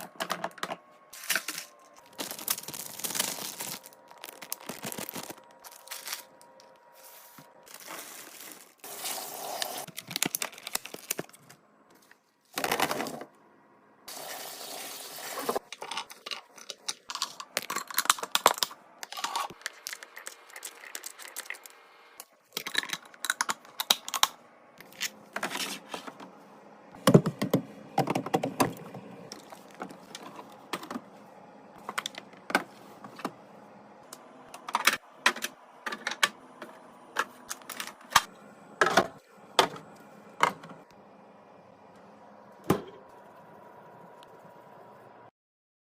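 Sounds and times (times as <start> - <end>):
packaging crinkling and tearing: 1.1 - 11.6, 16.5 - 21.7
plastic containers clicking and tapping: 27.0 - 28.8.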